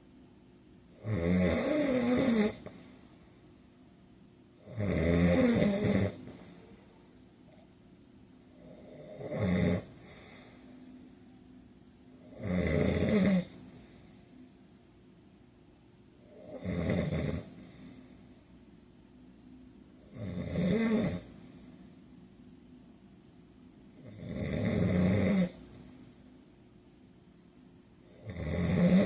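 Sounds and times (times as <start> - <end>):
man snoring: 0.9 - 2.8, 4.6 - 6.5, 8.6 - 10.5, 12.2 - 13.8, 16.2 - 17.8, 20.0 - 21.4, 24.0 - 25.7, 28.0 - 29.0.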